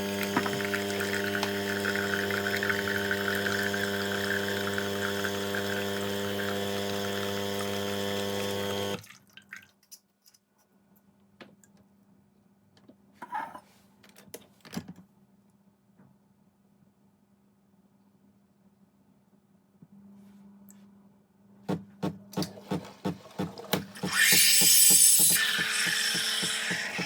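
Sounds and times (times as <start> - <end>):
espresso machine pump humming: 0.0 - 9.0, 23.9 - 27.0
water running into cup: 0.0 - 9.7, 23.2 - 27.0.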